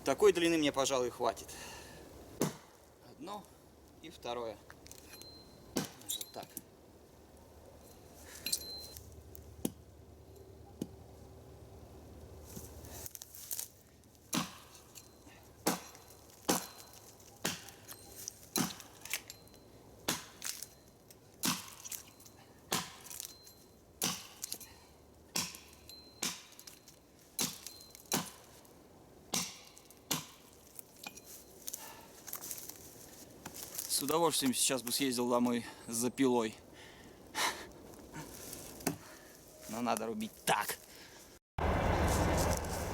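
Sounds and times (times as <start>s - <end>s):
axe chopping log: 2.4s - 2.8s, 5.8s - 6.0s, 14.3s - 14.7s, 15.6s - 17.9s, 18.6s - 19.0s, 20.1s - 20.6s, 21.4s - 21.8s, 22.7s - 23.2s, 24.0s - 24.6s, 25.3s - 26.6s, 27.4s - 28.5s, 29.3s - 30.5s.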